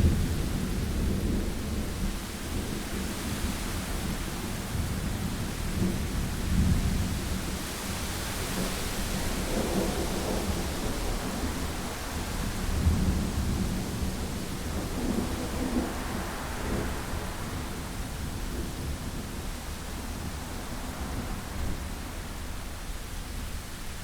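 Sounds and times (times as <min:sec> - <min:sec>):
steady rain: 0:00.0 - 0:24.0
rolling thunder: 0:08.6 - 0:23.6.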